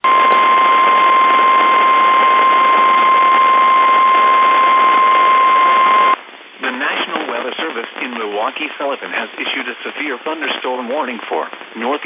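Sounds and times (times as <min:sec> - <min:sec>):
loud steady high alarm tone: 0:00.0 - 0:06.2
radio static: 0:00.0 - 0:12.0.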